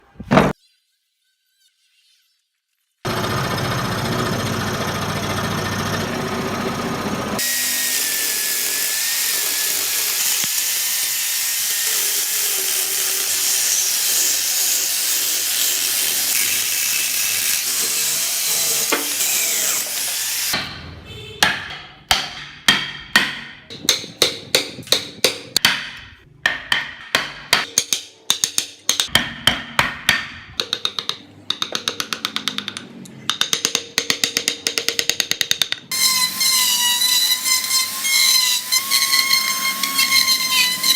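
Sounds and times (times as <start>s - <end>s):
power tool on wood: 3.1s - 20.6s, 35.9s - 40.9s.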